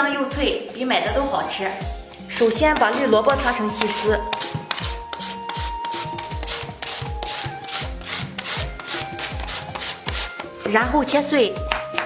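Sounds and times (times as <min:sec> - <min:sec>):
radish grating on hand grater: 0:02.1 - 0:10.8.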